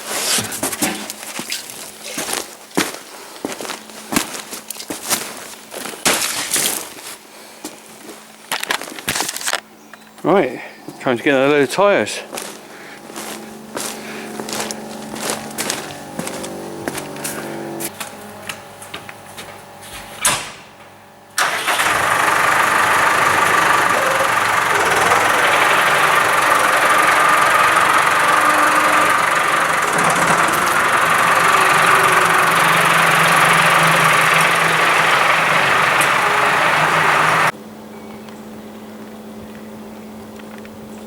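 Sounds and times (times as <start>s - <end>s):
tractor engine running: 0.0s - 6.0s, 11.0s - 20.0s, 20.8s - 37.5s.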